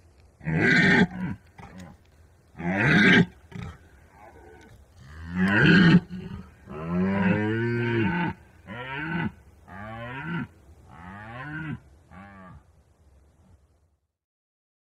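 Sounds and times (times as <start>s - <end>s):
deer stag roaring: 0.4s - 2.0s, 2.6s - 12.7s.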